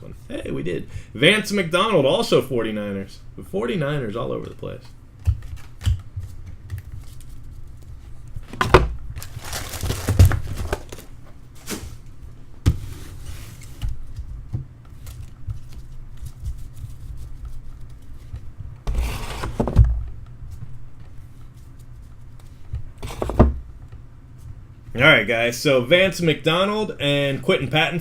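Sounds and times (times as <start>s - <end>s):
card wrappers rustling and crinkling: 9.1s - 12.1s.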